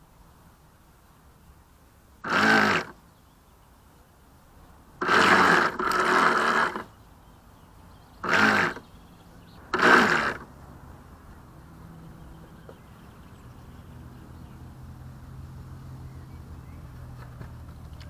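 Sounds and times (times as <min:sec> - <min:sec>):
electric boat motor revving: 0:02.2 - 0:03.0, 0:05.0 - 0:06.9, 0:08.2 - 0:08.9, 0:09.7 - 0:10.5.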